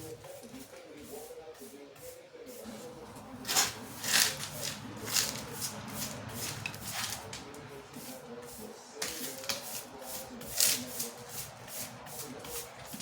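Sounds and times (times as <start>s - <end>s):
faint background music: 0.0s - 13.0s
mortar scraped off floor: 2.7s - 7.4s.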